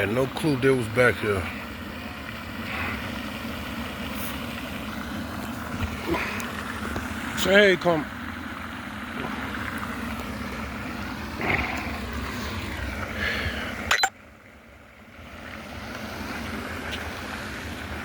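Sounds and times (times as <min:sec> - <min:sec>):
outdoor rumble: 0:00.0 - 0:18.0.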